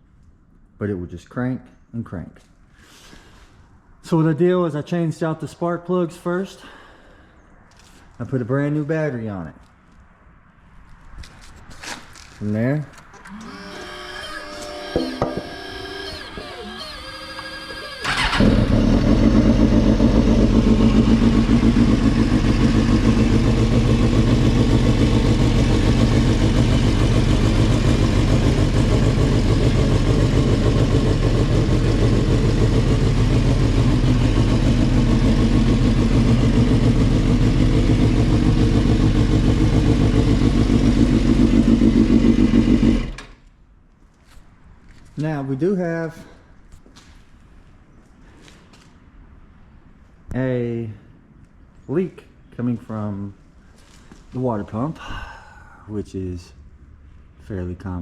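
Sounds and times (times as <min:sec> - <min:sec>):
motorcycle engine idling: 0:18.0 - 0:43.2.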